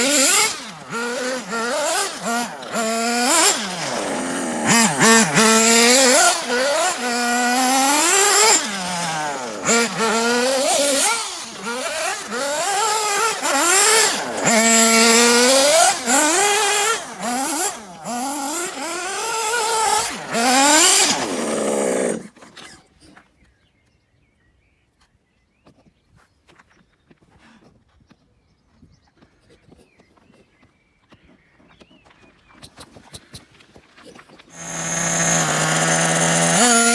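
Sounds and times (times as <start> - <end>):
model car nitro engine revving: 0.0 - 22.8, 34.5 - 36.9.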